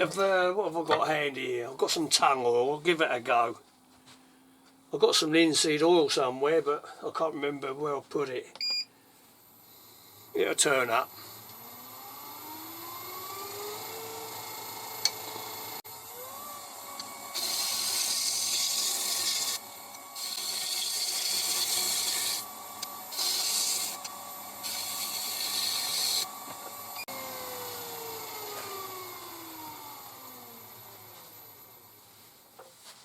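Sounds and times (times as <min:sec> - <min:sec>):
wood lathe motor whining: 0:10.1 - 0:32.0
tool hissing against spinning wood: 0:16.6 - 0:26.9.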